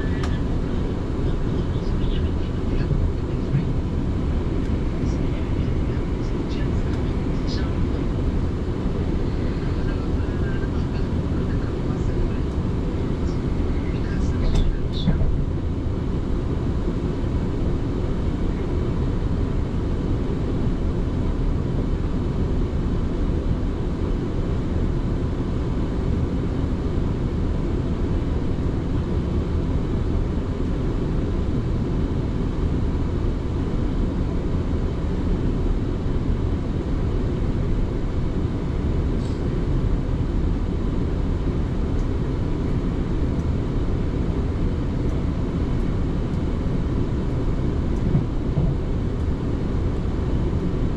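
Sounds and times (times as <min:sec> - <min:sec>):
train wheels rumbling on track: 0:48.0 - 0:48.9.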